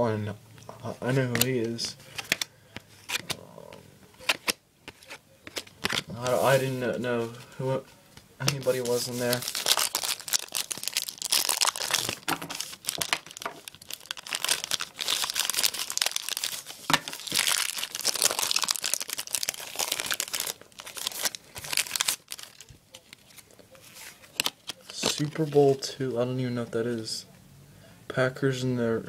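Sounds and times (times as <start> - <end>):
wrapper tearing and crinkling: 8.4 - 25.6.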